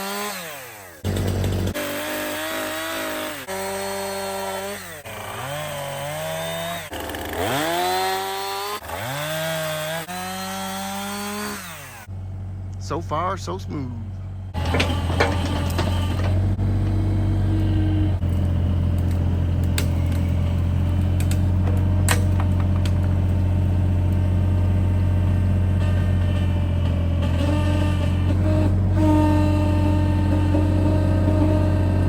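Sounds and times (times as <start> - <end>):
hydraulic whine: 11.9 - 23.4, 24.1 - 32.0
diesel engine running under load: 12.1 - 32.0
sharp knocks and cracks: 20.9 - 23.4.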